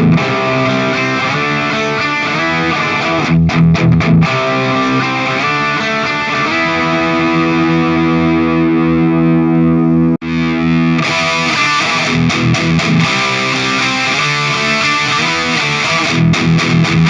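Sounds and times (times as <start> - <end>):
distorted electric guitar: 0.0 - 17.0.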